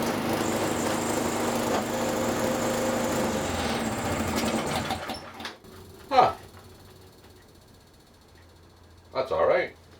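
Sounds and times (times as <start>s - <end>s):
snowblower engine running: 0.0s - 5.4s.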